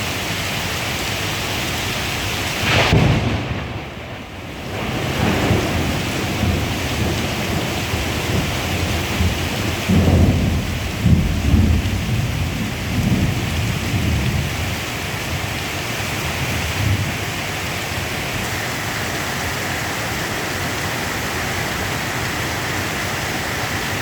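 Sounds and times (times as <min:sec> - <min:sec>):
heavy rain pouring: 0:00.0 - 0:24.0
thunder rumbling: 0:02.6 - 0:17.4.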